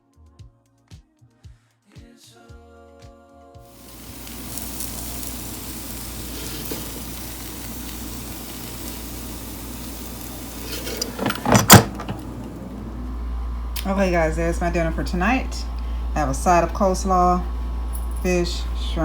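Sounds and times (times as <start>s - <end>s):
fish sizzling in frying: 3.7s - 11.3s.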